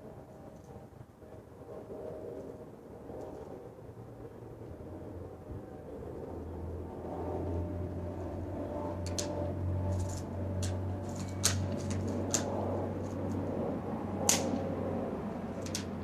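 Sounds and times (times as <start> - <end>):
steady low hum: 0.0 - 16.0
bb gun clicks and snaps: 14.3 - 14.7.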